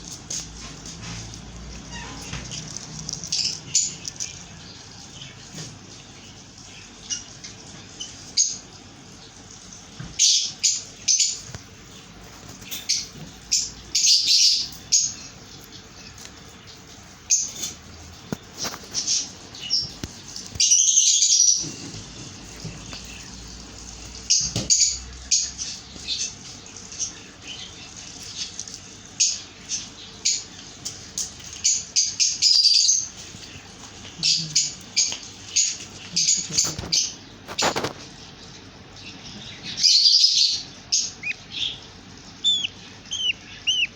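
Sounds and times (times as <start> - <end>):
baby budgies chirping: 0.1 - 43.9
longer bird call: 42.4 - 43.9.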